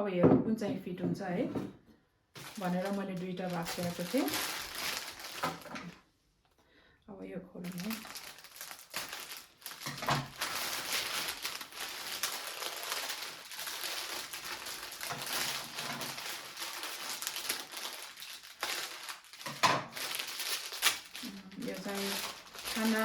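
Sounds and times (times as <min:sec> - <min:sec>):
bouquet wrapping crinkling: 0:02.4 - 0:06.0, 0:07.6 - 0:23.0.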